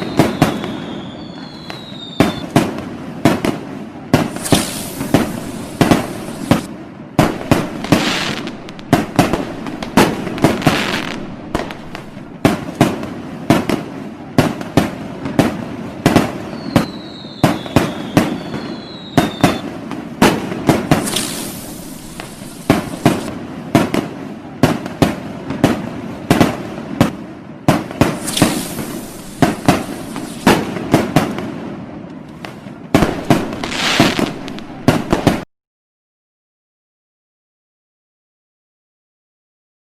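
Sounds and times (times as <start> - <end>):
falling firework whistles: 0.0 - 2.8, 3.5 - 13.7, 16.1 - 23.4, 27.9 - 31.4, 32.3 - 35.4
fireworks bangs and booms: 0.0 - 35.5
fireworks crackling: 0.0 - 35.5.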